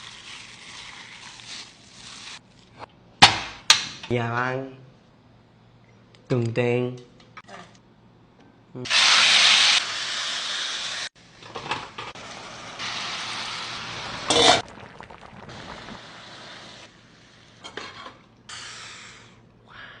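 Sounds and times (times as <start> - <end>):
pork sizzling in a pan: 8.9 - 11.1, 12.2 - 16.9.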